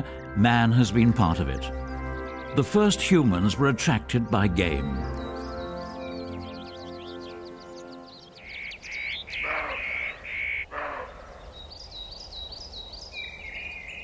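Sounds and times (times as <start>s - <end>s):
background music: 0.0s - 9.7s
small birds chirping: 0.0s - 14.0s
harsh caw-like bird calls: 8.4s - 11.7s.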